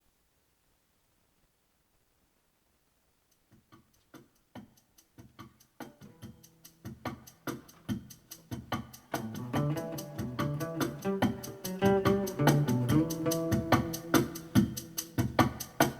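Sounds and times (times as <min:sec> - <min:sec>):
music with ticking beat and plucked notes: 0:03.3 - 0:15.9.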